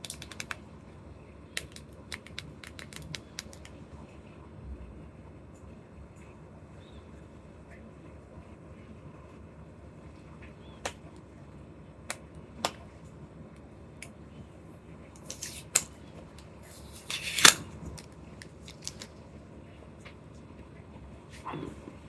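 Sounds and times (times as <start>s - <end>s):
plastic clicks and snaps: 0.0s - 0.6s, 1.6s - 3.8s, 17.1s - 19.2s
packaging crinkling: 16.7s - 19.1s.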